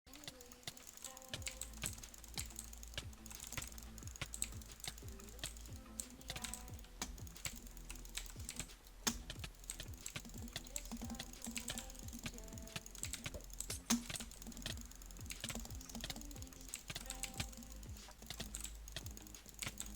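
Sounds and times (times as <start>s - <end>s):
computer keyboard keys clicking: 0.1s - 19.9s.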